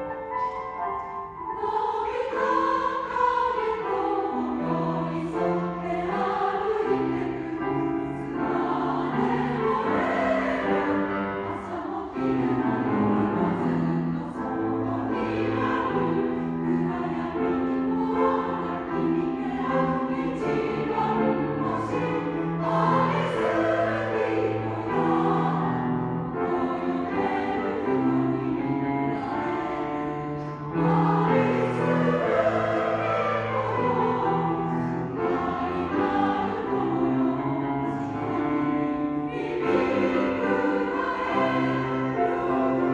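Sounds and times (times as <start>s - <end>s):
choir singing: 0.0s - 42.9s.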